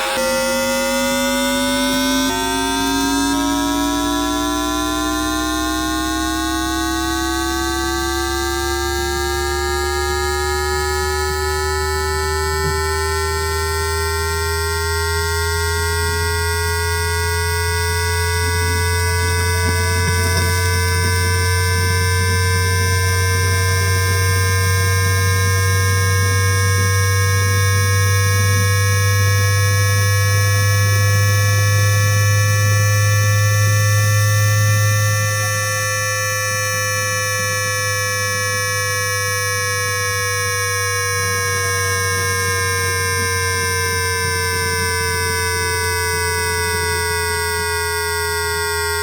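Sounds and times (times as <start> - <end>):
strong low hum: 0.0 - 6.1, 9.0 - 36.8
electrical whining tones: 0.0 - 49.0.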